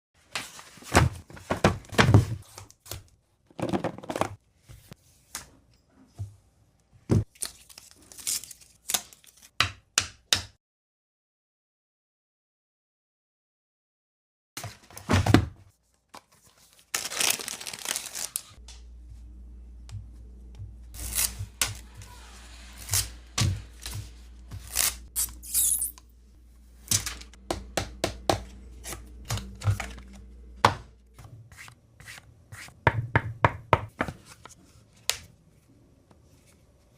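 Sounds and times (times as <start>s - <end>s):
low steady hum: 18.6s - 31.5s
paper tearing: 21.0s - 23.9s.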